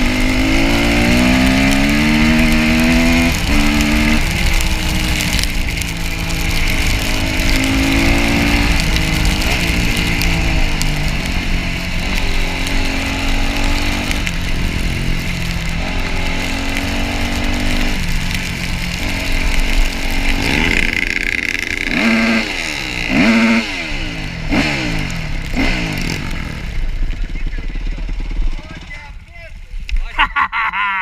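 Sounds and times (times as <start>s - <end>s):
dirt bike engine revving: 0.0s - 29.3s.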